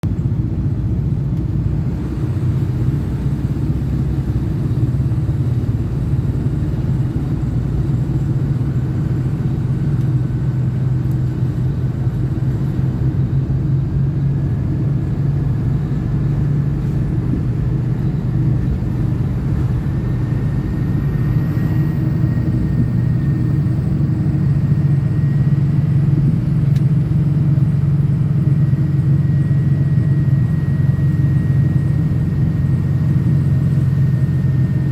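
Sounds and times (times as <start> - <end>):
diesel truck engine rumble: 0.0 - 34.9
faint high whine rising: 12.4 - 34.9.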